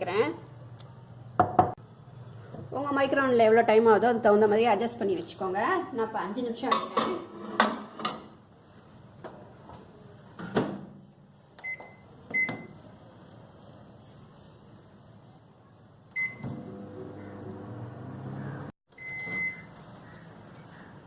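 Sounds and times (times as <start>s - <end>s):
short keypad beeps: 11.6s - 12.7s, 16.1s - 16.5s, 18.9s - 19.7s
microwave oven humming: 16.1s - 20.4s.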